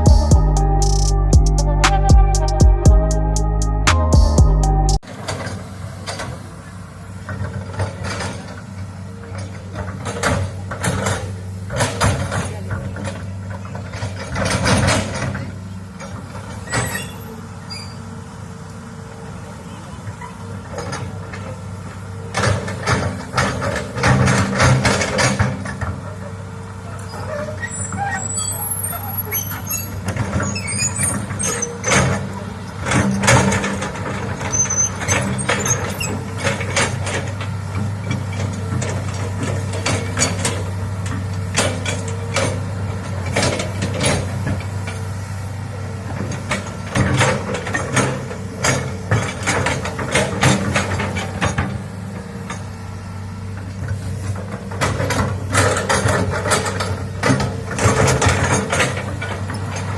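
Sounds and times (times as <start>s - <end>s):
excavator diesel engine: 0.0s - 59.9s
machine knocks and clanks: 22.3s - 26.0s, 46.1s - 52.8s, 53.6s - 59.9s.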